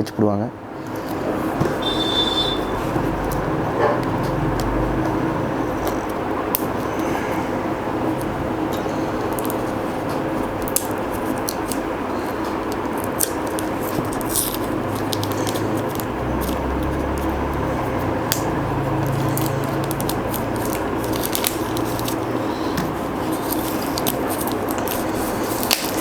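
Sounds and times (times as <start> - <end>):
steady background hum: 0.0 - 26.0
box and plastic wrap crackling: 8.0 - 26.0.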